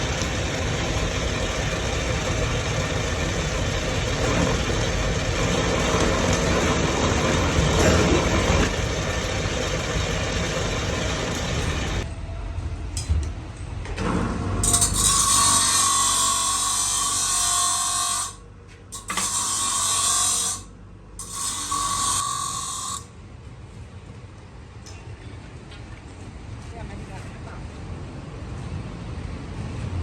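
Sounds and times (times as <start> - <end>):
metal grinding: 0.0 - 12.0, 14.6 - 18.4, 19.0 - 23.1
low machine hum: 0.0 - 15.4.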